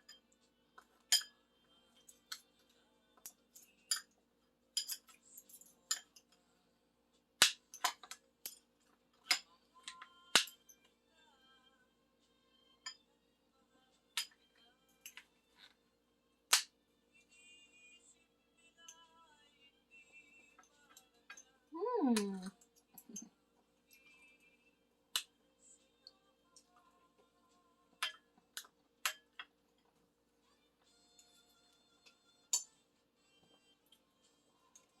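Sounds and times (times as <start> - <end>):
cutlery clinking on dishes: 0.0 - 1.4, 3.2 - 4.2, 4.8 - 6.4, 7.7 - 10.8, 29.0 - 29.5
faint background music: 0.0 - 35.0.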